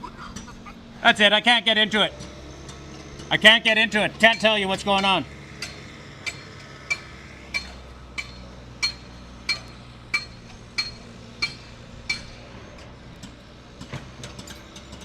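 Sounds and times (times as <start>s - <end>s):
hammer clanking on metal: 4.1s - 12.5s.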